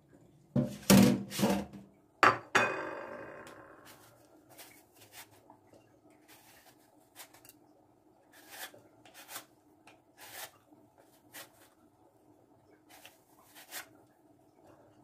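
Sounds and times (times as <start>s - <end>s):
soft rubbing and swishing: 3.9s - 5.5s, 6.1s - 7.5s, 12.8s - 14.0s.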